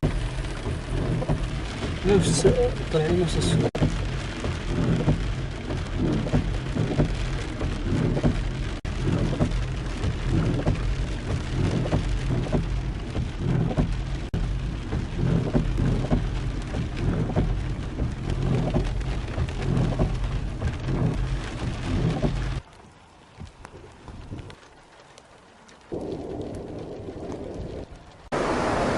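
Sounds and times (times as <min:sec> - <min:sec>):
heavy rain falling: 0:00.0 - 0:28.9
low rumble: 0:25.9 - 0:28.9.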